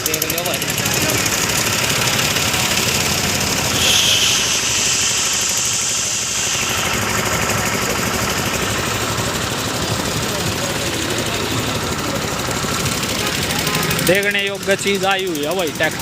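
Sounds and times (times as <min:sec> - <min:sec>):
tractor diesel engine running: 0:00.0 - 0:16.0
hiss: 0:01.2 - 0:13.0.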